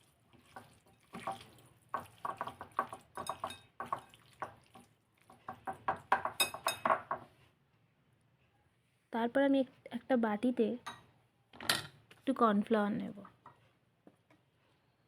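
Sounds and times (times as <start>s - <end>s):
wet mixing of meat in a bowl: 0.0s - 6.4s.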